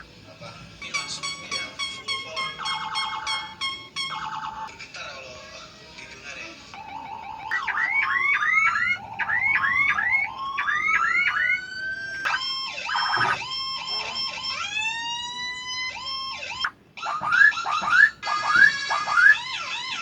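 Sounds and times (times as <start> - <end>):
bird mimicking siren: 2.0 - 4.8, 6.8 - 20.0
bird harsh chatter: 7.4 - 14.3, 15.8 - 20.0.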